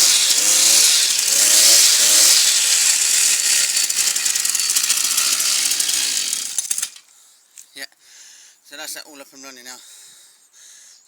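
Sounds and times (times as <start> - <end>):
brush cutter engine running: 0.0 - 7.0.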